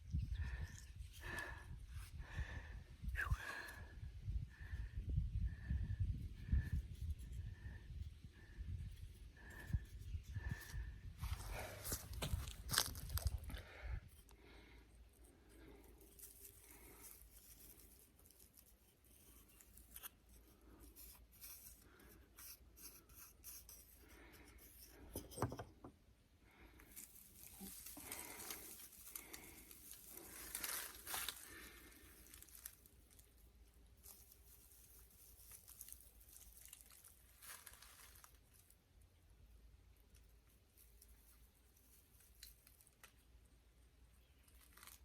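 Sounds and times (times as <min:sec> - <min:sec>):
hands rustling and scratching: 0:15.2 - 0:25.5, 0:26.8 - 0:38.7.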